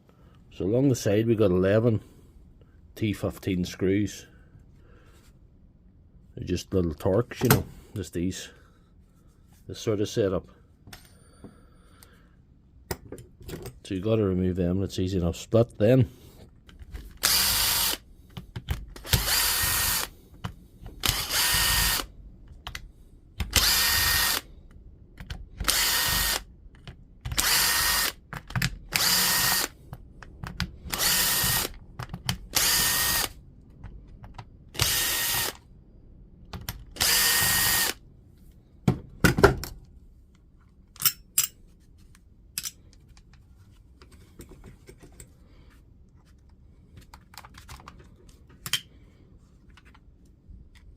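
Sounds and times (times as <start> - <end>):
power driver whirring: 17.2 - 18.0, 18.9 - 20.1, 21.0 - 22.1, 23.4 - 24.5, 25.6 - 26.5, 27.3 - 28.2, 28.9 - 29.8, 30.8 - 31.8, 32.4 - 33.4, 34.7 - 35.6, 36.9 - 38.0.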